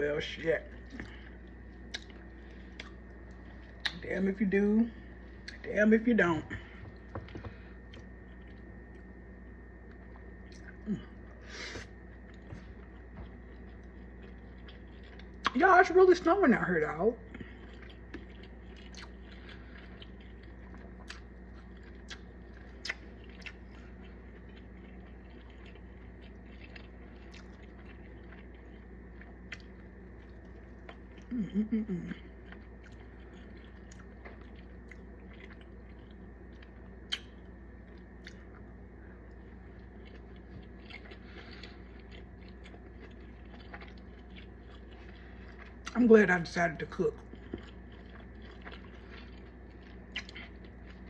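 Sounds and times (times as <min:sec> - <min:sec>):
steady low hum: 0:00.0 - 0:51.0
person chewing food: 0:00.6 - 0:04.2, 0:04.9 - 0:15.7, 0:17.2 - 0:51.0
person humming: 0:10.8 - 0:11.2, 0:31.3 - 0:32.2.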